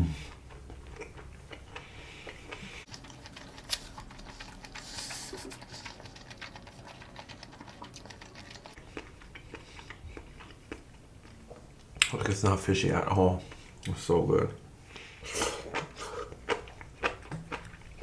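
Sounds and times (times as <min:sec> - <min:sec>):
mouth chewing wet clicks: 0:00.2 - 0:12.6.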